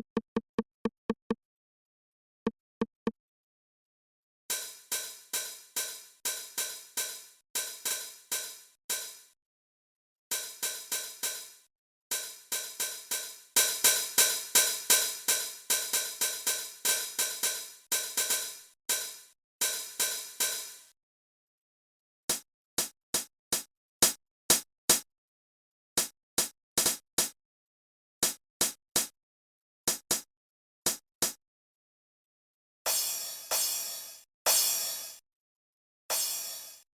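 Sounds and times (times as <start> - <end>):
electronic hi-hat and cymbal hits: 36.1 - 36.8.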